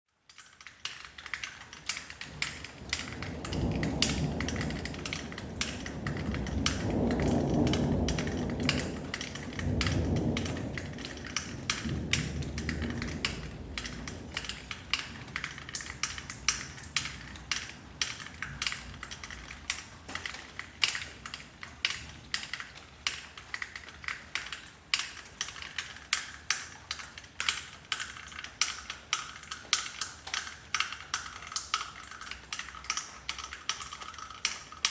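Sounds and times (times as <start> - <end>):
rain dripping: 0.1 - 34.9
thunder rumbling: 2.2 - 19.7.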